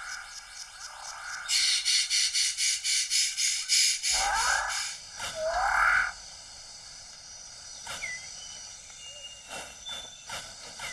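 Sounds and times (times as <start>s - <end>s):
harsh bird calls: 0.0s - 6.3s.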